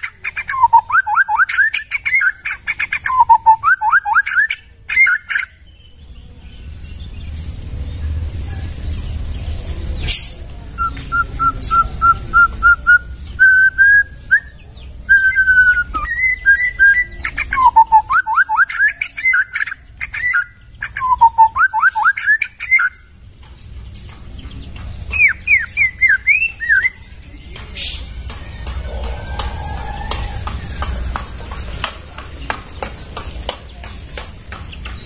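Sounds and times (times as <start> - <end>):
bird singing whistled notes: 0.0 - 7.5, 10.0 - 23.2, 25.1 - 28.1.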